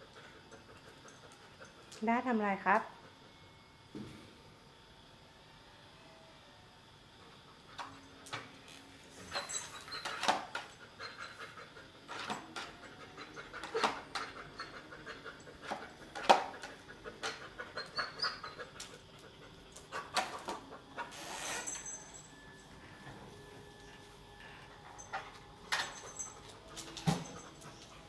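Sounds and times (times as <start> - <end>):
dog panting and huffing: 0.0 - 2.0, 10.6 - 21.1.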